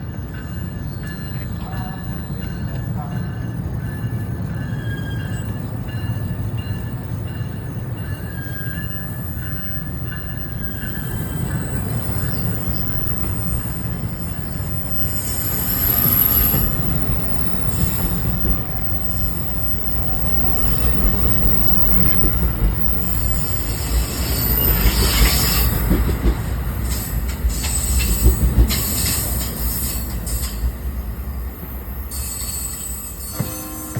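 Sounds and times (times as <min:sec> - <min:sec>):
train wheel and rail rumble: 0:00.0 - 0:33.9
rail-joint clicks: 0:00.1 - 0:14.4, 0:24.6 - 0:30.8, 0:32.1 - 0:33.9.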